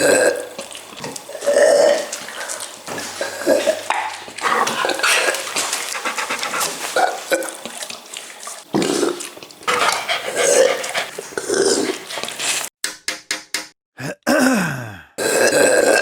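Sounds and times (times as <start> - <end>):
dog burping and grunting: 0.0 - 7.8, 8.7 - 12.4.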